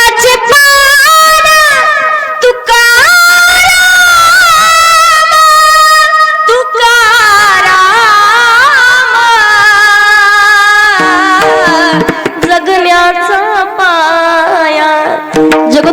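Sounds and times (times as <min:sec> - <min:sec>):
woman singing devotional melody: 0:00.0 - 0:15.9
sharp percussion strikes: 0:11.0 - 0:12.9, 0:15.3 - 0:15.9
instrumental accompaniment: 0:11.0 - 0:13.8, 0:15.2 - 0:15.9.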